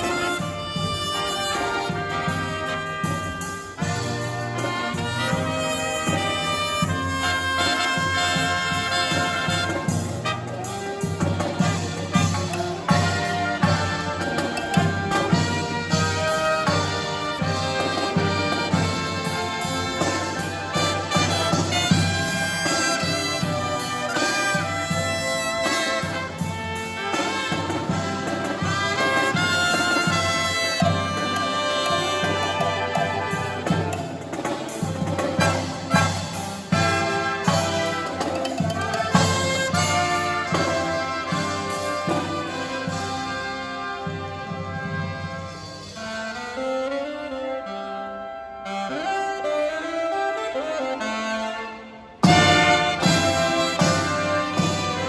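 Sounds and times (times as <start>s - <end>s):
steady drum beat: 0.0s - 46.0s, 52.2s - 55.0s
brass band playing: 0.0s - 55.0s
trombones: 0.0s - 55.0s
trumpets: 0.0s - 55.0s.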